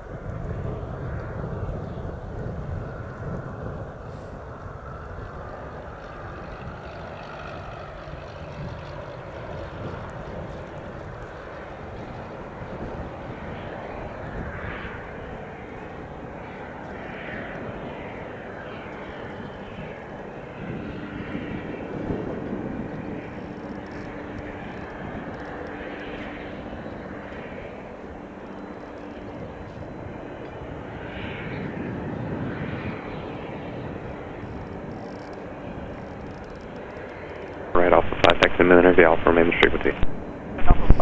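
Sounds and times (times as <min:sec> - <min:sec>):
propeller plane engine humming: 0:00.0 - 0:41.0
rushing noise: 0:37.8 - 0:41.0.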